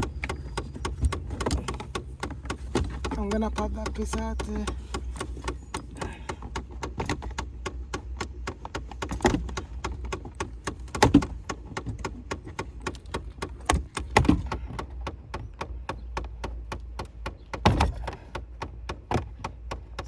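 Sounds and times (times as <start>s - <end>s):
actuator rapid clicking: 0.0s - 20.0s
plastic trim knocks: 0.0s - 20.0s.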